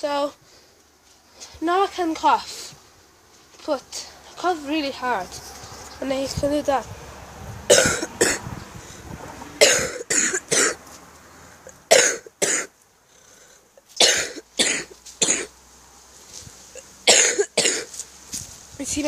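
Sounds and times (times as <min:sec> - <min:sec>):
person coughing hard: 0:07.7 - 0:08.4, 0:09.6 - 0:10.8, 0:11.9 - 0:12.7, 0:14.0 - 0:15.5, 0:17.1 - 0:17.9.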